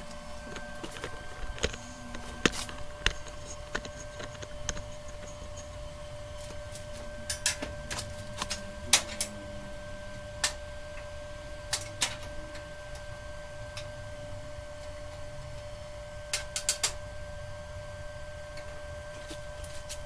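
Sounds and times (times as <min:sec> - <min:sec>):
steady hum: 0:00.0 - 0:20.0.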